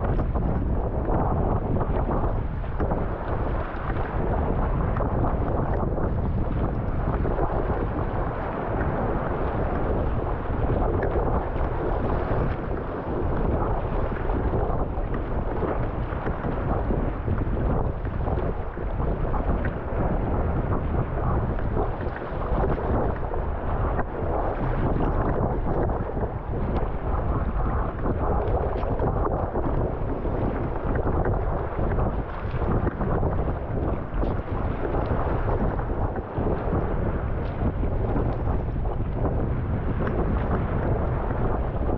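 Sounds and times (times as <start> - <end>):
wind buffeting microphone: 0.0 - 41.9.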